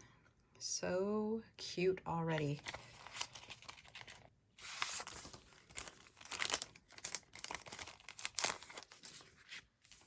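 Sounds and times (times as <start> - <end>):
paper packaging crinkling: 2.4 - 10.0.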